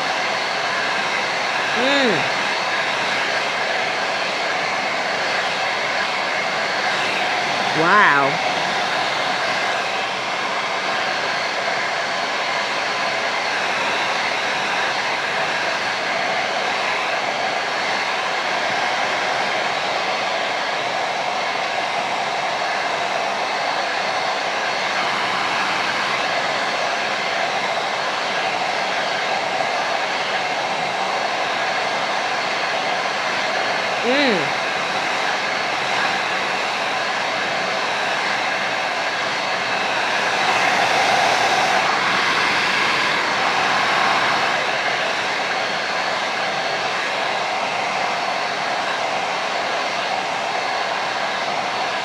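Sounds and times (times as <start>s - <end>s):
hair dryer running: 0.0s - 52.0s.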